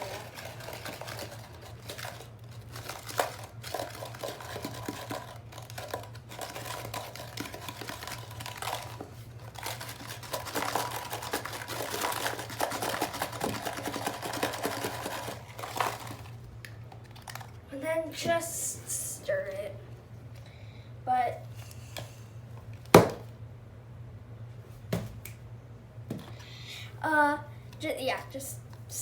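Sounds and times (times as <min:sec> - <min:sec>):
packaging crinkling and rustling: 0:00.0 - 0:17.6.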